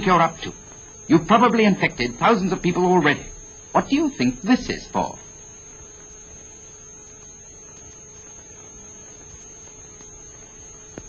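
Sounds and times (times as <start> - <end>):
film soundtrack hum and hiss: 0.0 - 11.0
thin high whine: 0.0 - 11.0.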